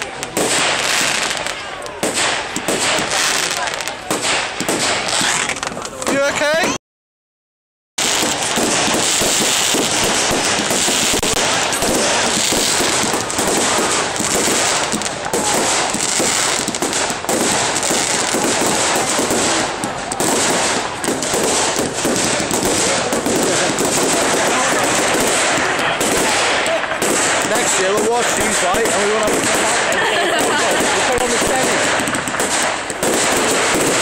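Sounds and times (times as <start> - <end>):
fireworks crackling and banging: 0.0 - 6.8, 8.0 - 34.0.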